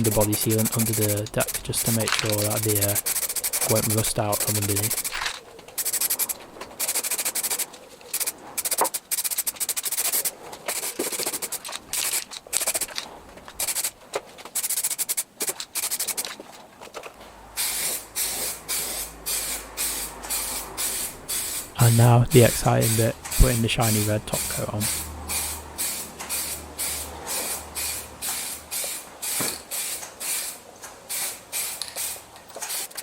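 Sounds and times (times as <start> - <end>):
aerosol can spraying: 0.2 - 5.3.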